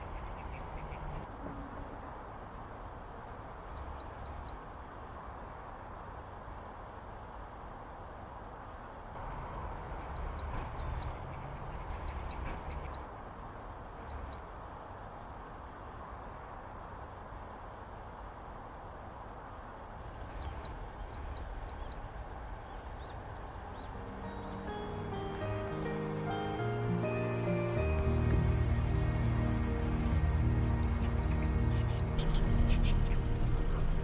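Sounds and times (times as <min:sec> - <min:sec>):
bird singing high notes: 0:23.7 - 0:34.0.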